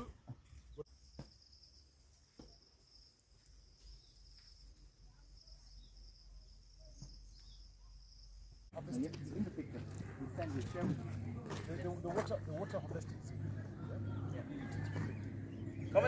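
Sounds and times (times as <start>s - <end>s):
insects chirring: 0.9s - 8.7s.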